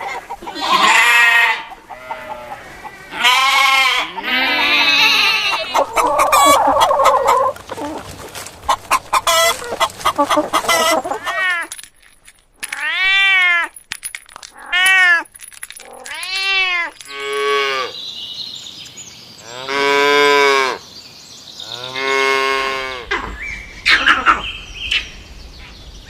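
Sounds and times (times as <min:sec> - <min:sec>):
chickens clucking and squawking: 0:00.0 - 0:11.6, 0:22.1 - 0:25.0.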